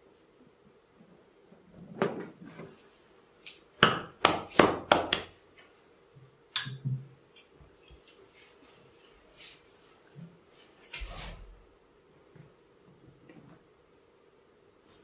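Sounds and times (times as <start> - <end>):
percussive massage knocks: 3.8 - 5.3.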